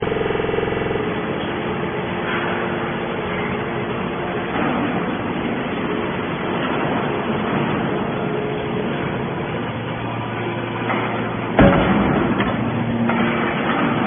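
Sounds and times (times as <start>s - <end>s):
hydraulic baler pressing metal: 0.0s - 14.0s.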